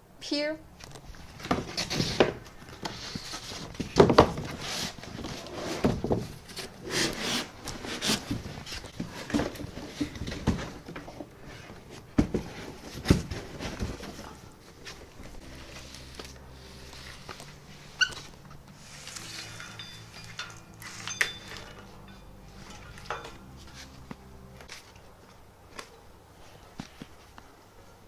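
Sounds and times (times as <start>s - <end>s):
packaging being handled: 0.8s - 27.6s
hard parts knocking and thudding: 1.4s - 15.4s.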